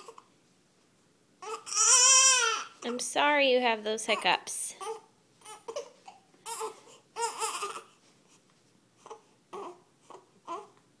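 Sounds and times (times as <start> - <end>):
baby crying: 0.0 - 0.3, 1.4 - 2.8, 4.7 - 8.0, 9.0 - 10.8.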